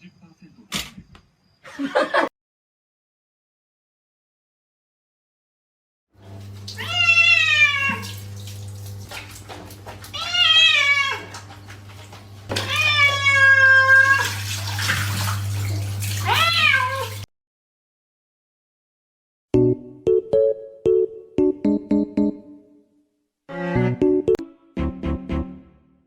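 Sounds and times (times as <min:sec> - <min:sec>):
cat meowing: 0:06.8 - 0:08.2, 0:10.1 - 0:11.4, 0:12.5 - 0:14.4, 0:16.2 - 0:17.2.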